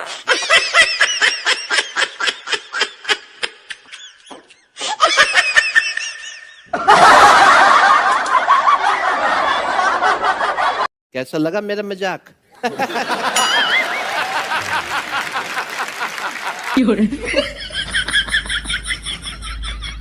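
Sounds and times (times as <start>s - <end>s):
loud laughter: 4.9s - 10.9s, 12.6s - 20.0s.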